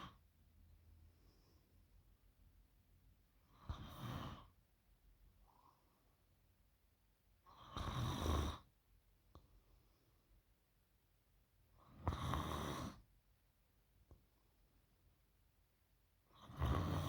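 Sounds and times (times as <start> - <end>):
quiet breathing: 0.9 - 2.2, 5.4 - 6.4, 9.3 - 10.6
woman snoring: 12.0 - 13.0, 16.4 - 17.0.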